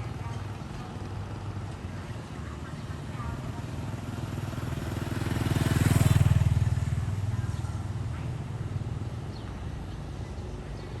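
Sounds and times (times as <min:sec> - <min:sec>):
street traffic hum: 0:00.0 - 0:11.0
motorcycle engine passing by: 0:04.0 - 0:07.4.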